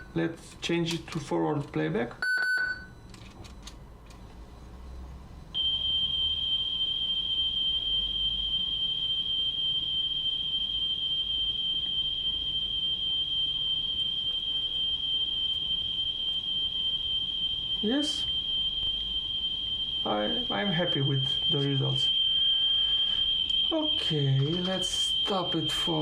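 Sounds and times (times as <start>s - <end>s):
steady high test tone: 0.0s - 0.3s, 5.6s - 26.0s.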